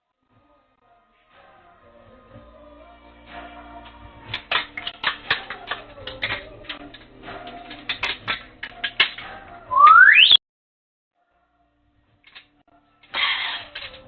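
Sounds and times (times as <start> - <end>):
bird whistle rising in pitch: 9.7 - 10.4.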